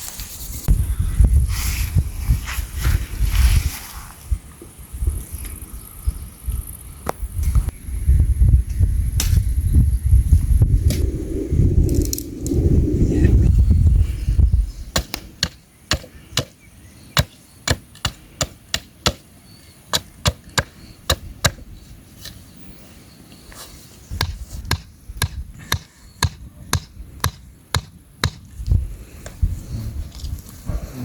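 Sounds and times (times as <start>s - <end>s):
sharp chopping strokes: 15.0s - 16.6s.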